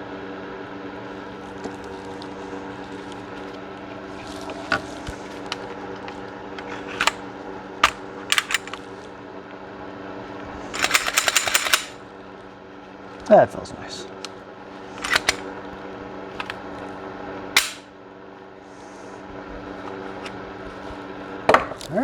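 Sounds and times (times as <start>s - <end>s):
low electrical hum: 0.0s - 22.0s
metallic clicks of gun parts: 6.6s - 7.2s, 7.8s - 8.8s, 10.8s - 12.0s, 15.0s - 15.4s, 17.6s - 17.9s.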